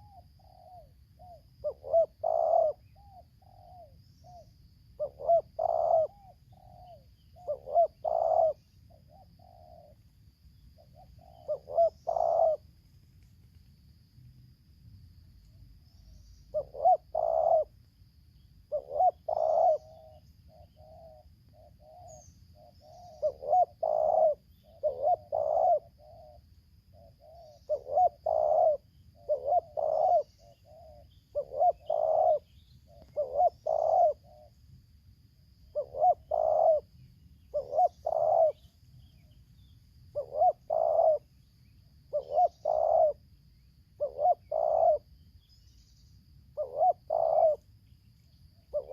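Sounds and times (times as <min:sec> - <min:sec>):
doves cooing: 0:00.0 - 0:10.1, 0:10.8 - 0:13.0, 0:16.5 - 0:17.8, 0:18.6 - 0:34.6, 0:35.7 - 0:41.5, 0:42.1 - 0:43.3, 0:44.0 - 0:45.2, 0:46.6 - 0:47.6.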